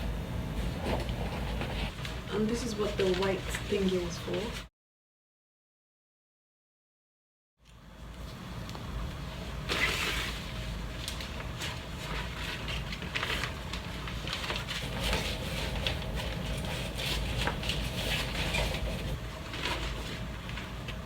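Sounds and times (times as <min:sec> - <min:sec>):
steady low rumble: 0:00.0 - 0:01.9, 0:14.4 - 0:19.3
fabric rustling: 0:14.1 - 0:20.3.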